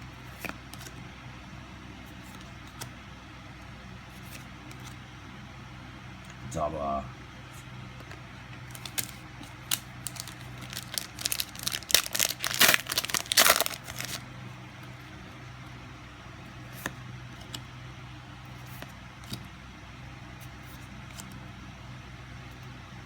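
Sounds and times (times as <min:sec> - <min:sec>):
steady low hum: 0:00.0 - 0:23.0
foil pack tearing and crinkling: 0:08.7 - 0:14.2.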